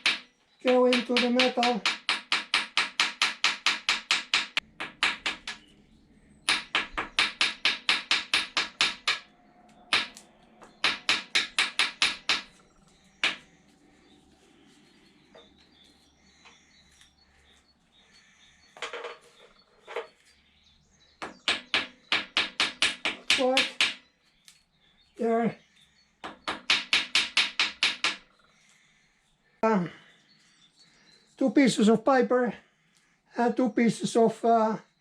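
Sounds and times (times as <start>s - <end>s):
hammer tapping on metal: 0.0s - 5.7s, 6.5s - 9.3s, 9.9s - 12.6s, 13.2s - 13.4s, 21.2s - 24.0s, 26.2s - 28.2s.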